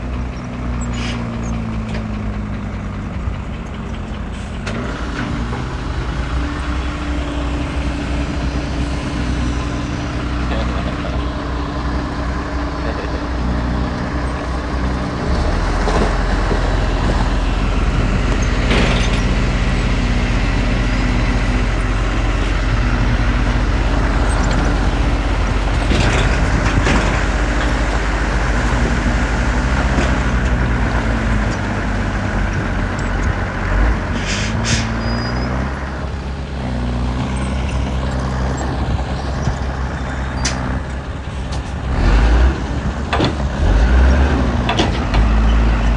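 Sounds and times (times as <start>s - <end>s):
heavy diesel engines working: 0.0s - 45.9s
short high squeal: 34.2s - 35.7s.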